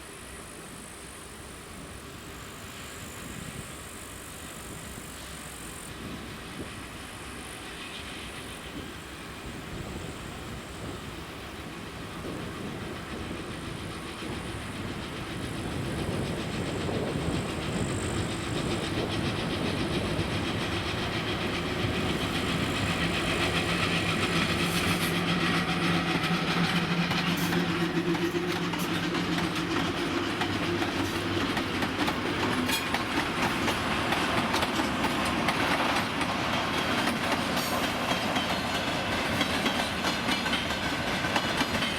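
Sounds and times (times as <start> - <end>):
locomotive hum: 0.0 - 41.9
wheels clicking over rail joints: 12.2 - 41.9.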